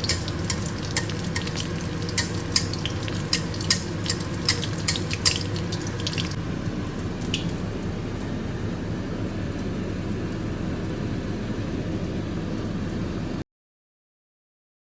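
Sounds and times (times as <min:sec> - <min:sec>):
utensil clicking against pan: 0:00.0 - 0:06.4
eggs frying in oil: 0:00.0 - 0:10.5.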